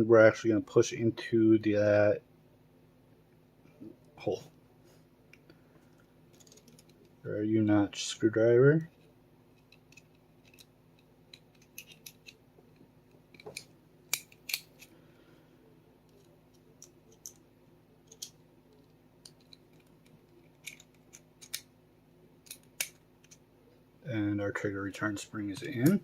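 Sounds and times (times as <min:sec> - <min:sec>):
metallic clicks and scraping: 0:06.3 - 0:07.1, 0:08.9 - 0:14.9, 0:18.0 - 0:21.7, 0:22.4 - 0:23.4.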